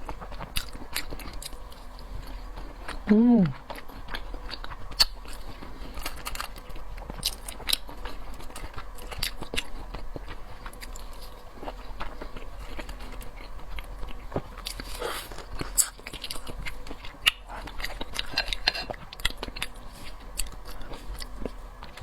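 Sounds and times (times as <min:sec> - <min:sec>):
biting and chewing seafood: 0:00.0 - 0:22.0.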